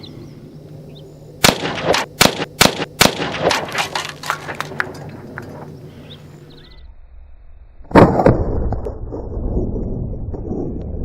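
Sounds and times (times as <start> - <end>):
rifle shots: 1.4 - 4.7.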